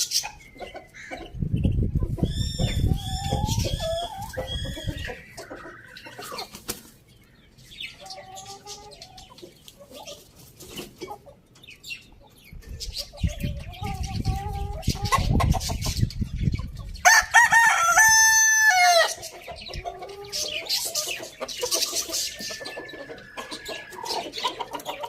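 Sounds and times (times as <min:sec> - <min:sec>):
chickens clucking: 0:00.0 - 0:25.0.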